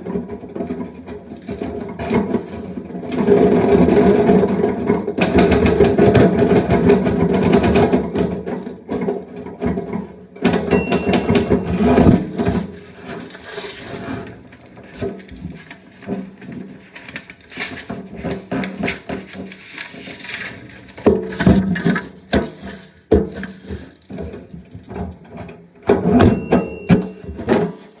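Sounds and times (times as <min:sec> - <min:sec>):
typewriter bell ding: 0:10.6 - 0:12.5, 0:26.2 - 0:27.8.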